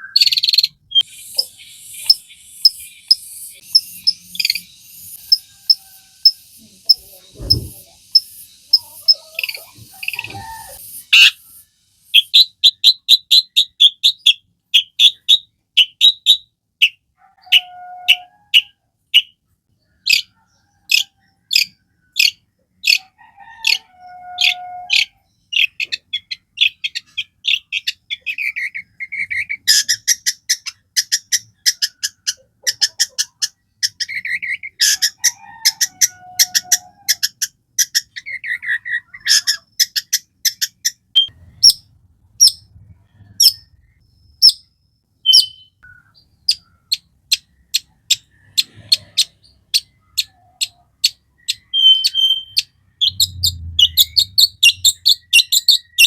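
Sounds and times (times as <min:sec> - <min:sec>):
shrike singing chips and trills: 0:00.0 - 0:19.4, 0:35.8 - 0:56.0.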